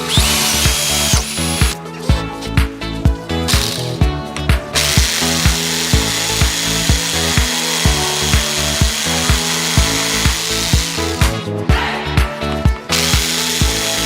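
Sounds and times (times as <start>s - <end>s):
router cutting wood: 0.0s - 1.8s, 4.8s - 11.4s, 12.9s - 14.0s
background music with steady beat: 0.0s - 14.0s.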